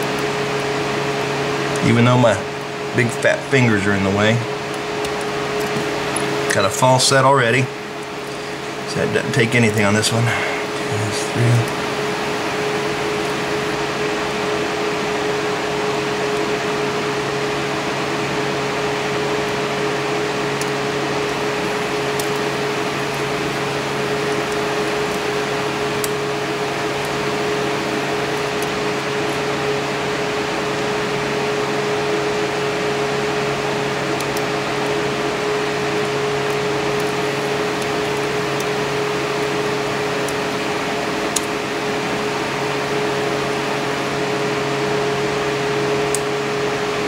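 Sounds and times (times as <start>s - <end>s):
machine hum with hiss: 0.0s - 47.0s.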